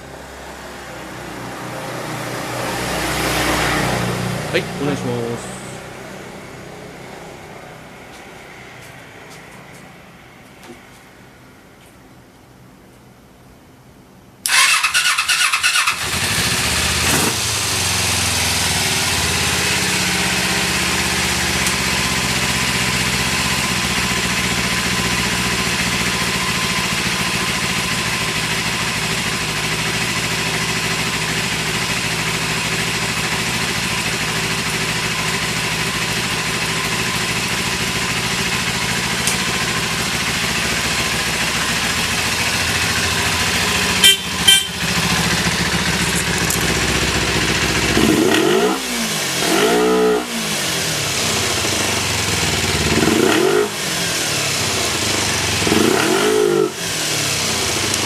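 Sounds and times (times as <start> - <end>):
electric starter cranking: 14.4 - 16.2
motorcycle engine idling: 15.7 - 49.1, 50.9 - 55.9, 57.0 - 58.0.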